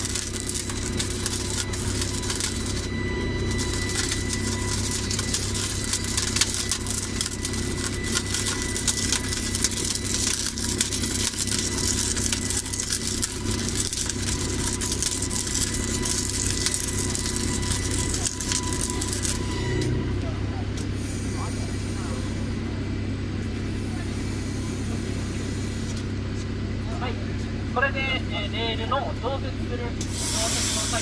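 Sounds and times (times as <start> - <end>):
electric arc crackling: 0.0 - 19.9, 30.0 - 31.0
engine hum: 0.0 - 31.0
thin steady whine: 0.0 - 31.0.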